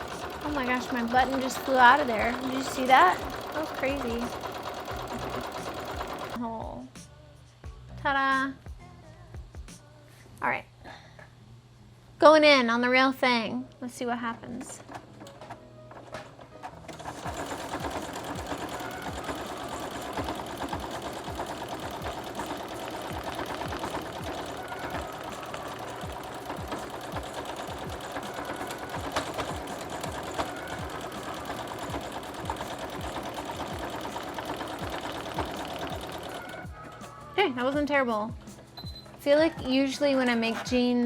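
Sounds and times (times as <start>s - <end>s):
sewing machine stitching: 0.0s - 6.4s, 14.6s - 37.2s.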